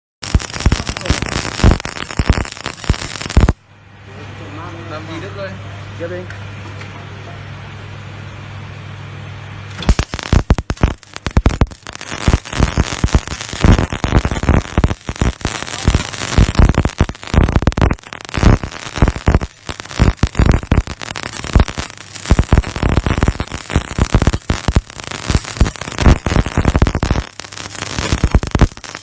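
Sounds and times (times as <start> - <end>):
welding arc crackling: 0.2 - 3.6, 9.7 - 29.0
welding machine humming: 0.2 - 5.4, 9.4 - 29.0.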